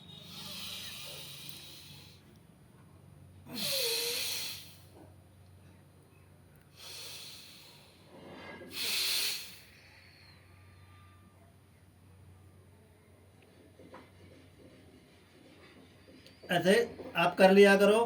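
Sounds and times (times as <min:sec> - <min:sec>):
person breathing hard: 0:00.1 - 0:02.3, 0:03.5 - 0:05.0, 0:06.7 - 0:08.1, 0:08.7 - 0:10.4.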